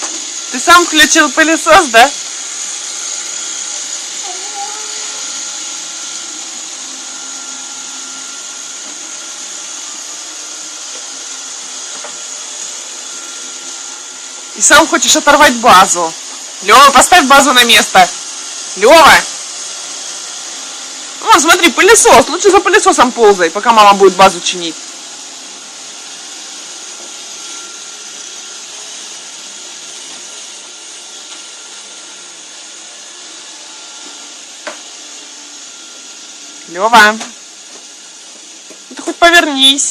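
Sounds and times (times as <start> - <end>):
robot vacuum cleaner running: 0.0 - 39.9.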